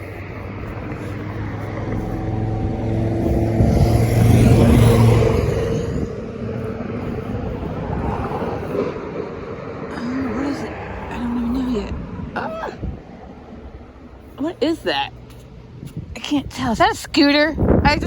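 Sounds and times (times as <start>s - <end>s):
vehicle engine driving past: 1.3s - 9.9s.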